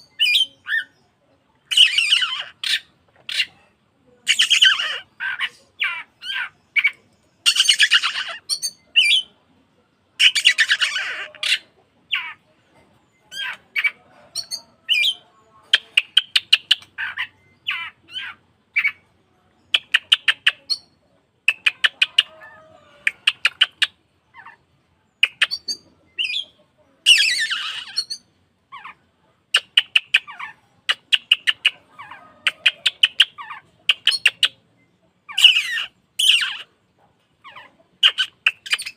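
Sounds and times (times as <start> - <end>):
bird singing: 0.0 - 3.6, 4.3 - 36.8.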